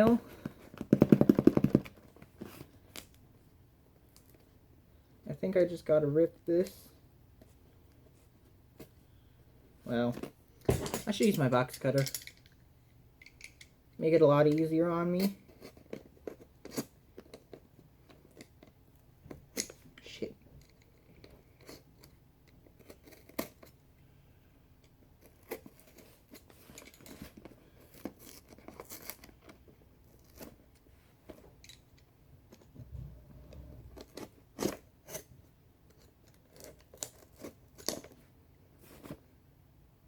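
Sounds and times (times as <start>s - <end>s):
small handling clicks: 13.2s - 13.7s.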